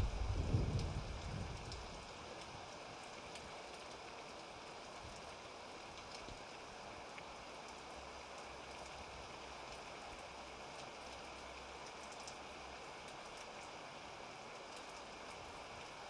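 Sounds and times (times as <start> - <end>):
distant thunder rumble: 0.0 - 1.6
steady rain: 0.0 - 16.0
raindrop ticks: 0.7 - 4.5, 5.1 - 9.0, 9.6 - 13.8, 14.6 - 15.9.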